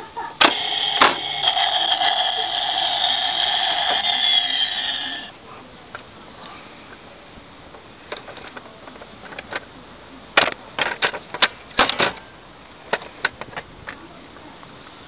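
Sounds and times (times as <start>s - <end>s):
plastic toy clicks and knocks: 10.4s - 12.2s.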